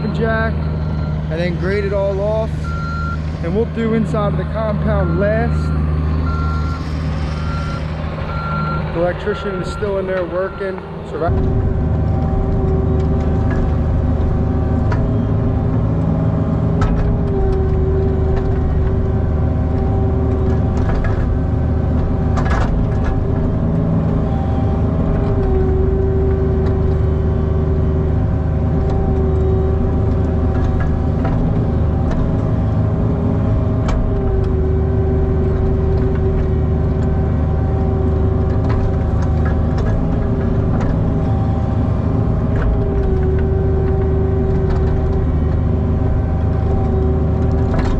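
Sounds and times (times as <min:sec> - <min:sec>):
excavator diesel engine running: 0:00.0 - 0:47.9.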